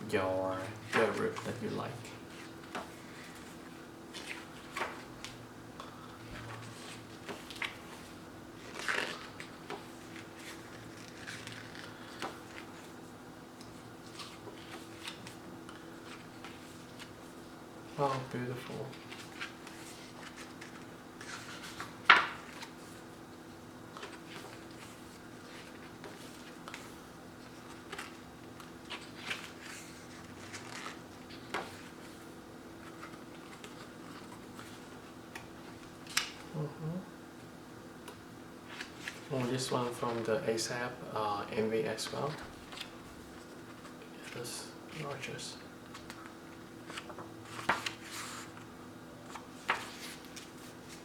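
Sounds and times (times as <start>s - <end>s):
faint steady hum: 0.0s - 51.0s
pages turning and rustling: 0.8s - 5.4s, 6.3s - 17.4s, 18.0s - 23.2s, 23.9s - 36.5s, 38.1s - 40.3s, 42.0s - 51.0s.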